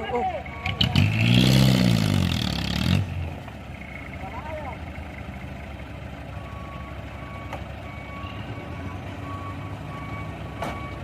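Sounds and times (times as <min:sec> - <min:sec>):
vehicle reversing alarm: 0:00.0 - 0:01.2, 0:06.3 - 0:11.0
truck engine running: 0:00.0 - 0:11.0.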